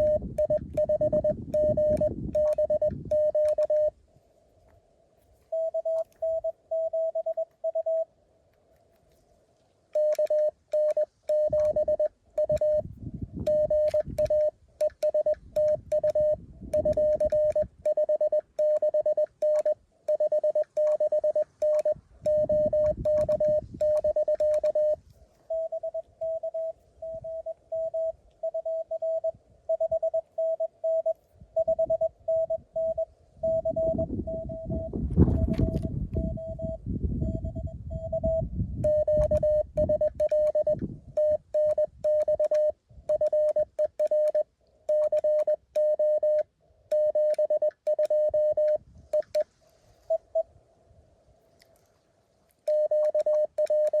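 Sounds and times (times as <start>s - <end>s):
morse code tone: 0.0s - 4.0s, 5.5s - 8.1s, 10.0s - 49.5s, 50.1s - 50.5s, 52.7s - 54.0s
keying clicks: 13.5s - 25.0s.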